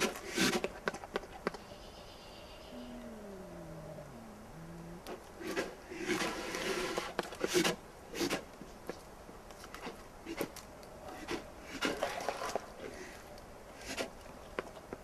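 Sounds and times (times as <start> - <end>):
bear huffing: 2.7 - 7.0.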